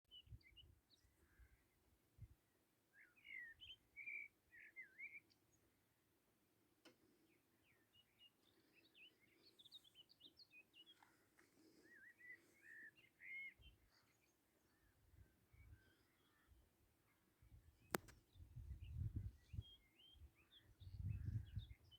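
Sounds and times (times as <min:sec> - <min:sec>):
small birds chirping and warbling: 0:03.0 - 0:05.6, 0:07.2 - 0:21.9
sharp click: 0:17.9 - 0:18.2.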